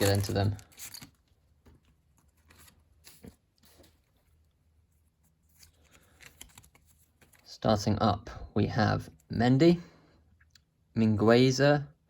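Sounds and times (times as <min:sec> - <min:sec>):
foil packet and cards rustling: 0:00.0 - 0:01.2, 0:05.5 - 0:07.5.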